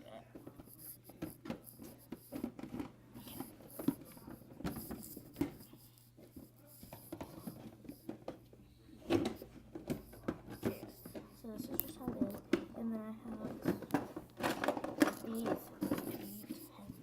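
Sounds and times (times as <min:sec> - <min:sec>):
plastic containers knocking and rattling: 0:00.3 - 0:05.7, 0:09.0 - 0:16.4.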